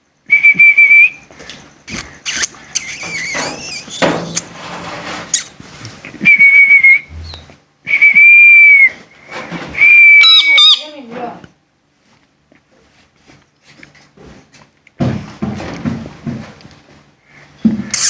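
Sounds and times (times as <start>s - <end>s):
high-pitched whistles: 2.2s - 4.0s, 6.2s - 9.0s
rustling: 3.0s - 6.1s.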